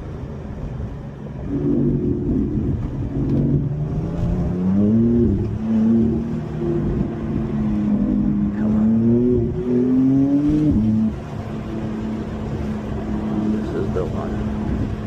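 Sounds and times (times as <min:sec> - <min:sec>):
car engine accelerating: 0:00.0 - 0:15.0.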